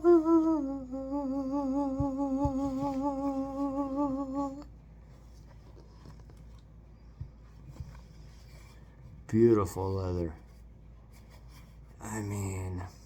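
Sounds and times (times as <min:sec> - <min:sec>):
person humming a held note: 0:00.0 - 0:04.7.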